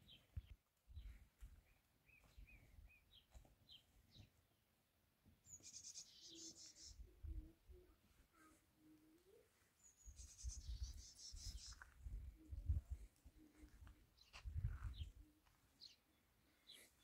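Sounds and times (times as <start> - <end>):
small bird chirps: 5.4 - 12.8.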